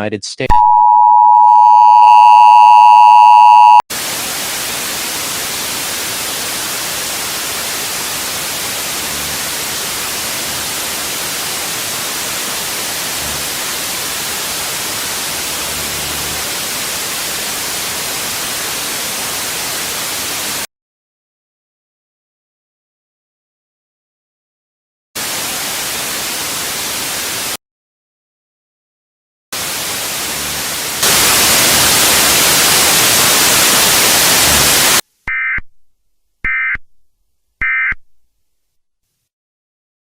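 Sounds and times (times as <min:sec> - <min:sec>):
two-tone alert signal: 0:00.5 - 0:03.8
white-noise static: 0:03.0 - 0:20.6, 0:25.2 - 0:27.6, 0:29.6 - 0:35.0.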